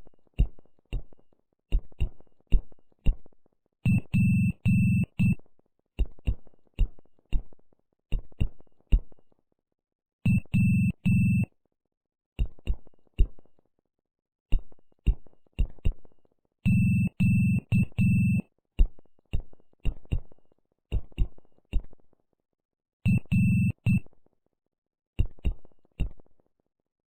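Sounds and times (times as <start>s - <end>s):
morse code beeps: 3.9s - 5.4s, 10.3s - 11.5s, 16.7s - 18.4s, 23.1s - 24.0s.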